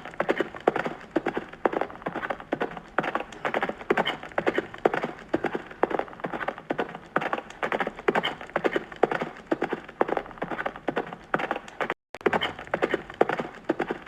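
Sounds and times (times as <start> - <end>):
horse hooves clip-clopping: 0.0 - 14.0.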